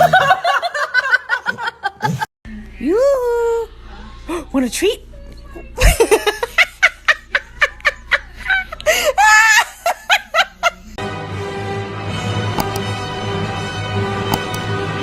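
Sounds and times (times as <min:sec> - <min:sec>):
music: 0:11.0 - 0:15.0.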